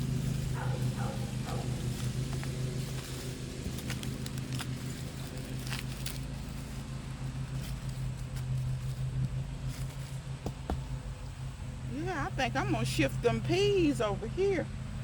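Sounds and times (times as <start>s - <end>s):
lawn mower engines humming: 0.0s - 15.0s
digging scrapes and clicks: 0.6s - 10.6s.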